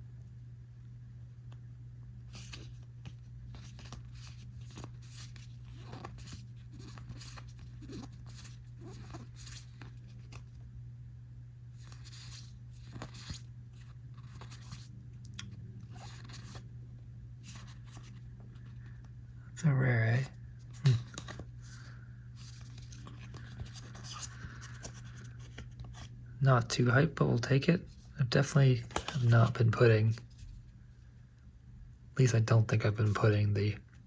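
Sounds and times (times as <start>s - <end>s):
low electrical hum: 0.0s - 34.0s
cards rustling: 2.2s - 10.6s, 11.8s - 16.7s, 17.4s - 19.1s, 20.0s - 26.2s, 27.3s - 30.7s.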